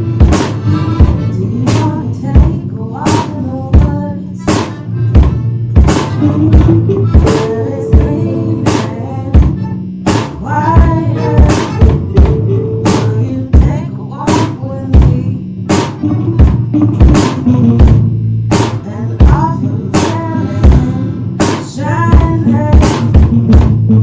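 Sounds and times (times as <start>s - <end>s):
accordion chords: 0.0s - 14.6s
bass guitar: 0.0s - 24.0s
drum kit beat: 0.0s - 24.0s.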